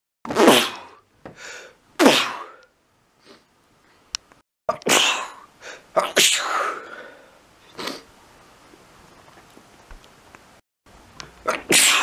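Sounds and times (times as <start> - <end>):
person sneezing: 0.3 - 2.6, 4.7 - 7.1, 11.4 - 12.0.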